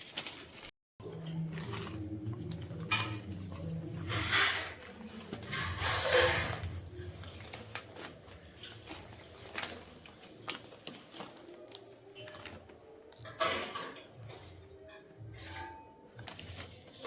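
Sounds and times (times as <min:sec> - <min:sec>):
newspaper pages rustling: 0:00.0 - 0:00.7, 0:06.5 - 0:13.2, 0:16.2 - 0:17.0.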